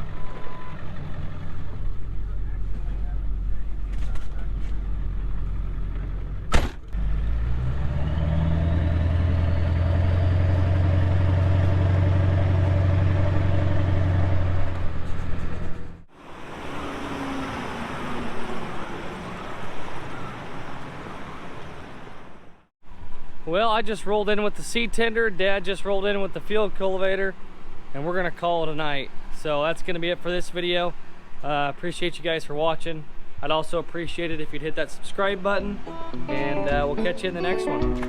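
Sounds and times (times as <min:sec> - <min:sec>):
vehicle engine accelerating: 0:04.6 - 0:20.2.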